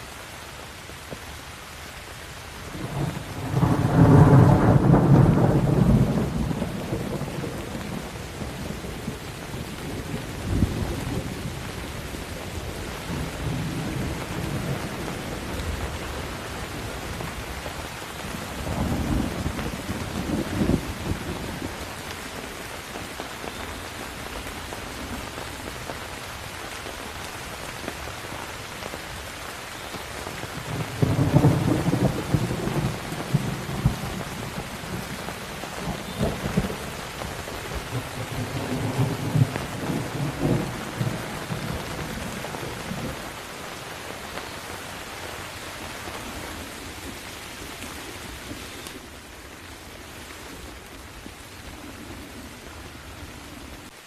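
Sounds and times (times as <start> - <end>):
heavy rain on hard surfaces: 0.0 - 54.0
thunder rumbling: 2.7 - 22.0, 30.5 - 43.5.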